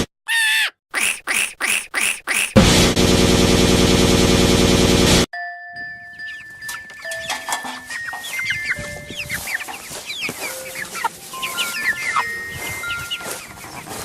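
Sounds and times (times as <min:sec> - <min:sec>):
chickens chirping: 0:06.0 - 0:14.0.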